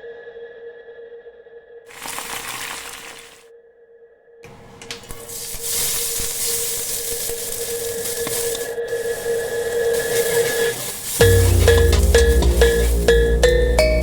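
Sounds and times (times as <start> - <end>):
noodles hissing while cooking: 1.9 - 3.4, 4.5 - 14.0
steady tone: 11.2 - 14.0.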